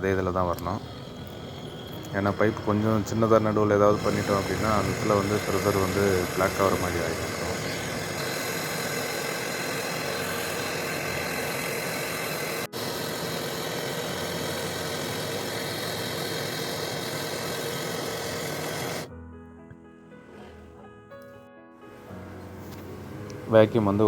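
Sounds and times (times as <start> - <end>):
quiet background music: 0.0 - 7.9, 19.1 - 24.0
vacuum pump running: 0.0 - 19.1.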